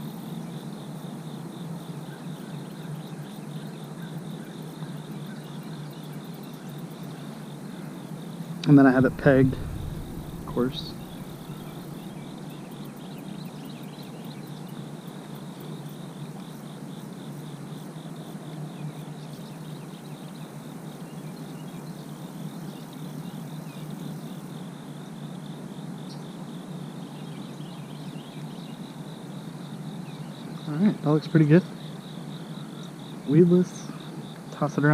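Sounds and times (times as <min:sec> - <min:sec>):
insects chirping: 0:00.0 - 0:34.9
low background rumble: 0:08.6 - 0:13.1.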